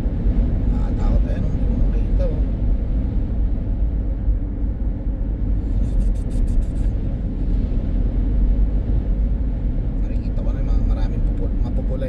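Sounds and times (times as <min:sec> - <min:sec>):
road and wind noise in car: 0:00.0 - 0:12.0.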